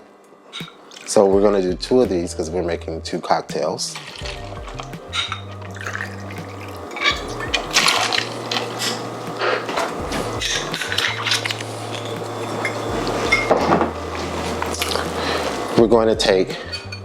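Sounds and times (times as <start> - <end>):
liquid pouring and splashing: 0.9 - 1.2, 3.9 - 15.8
background music with bass line: 1.4 - 3.1, 3.9 - 17.0
glass and metal clinks: 16.6 - 17.0.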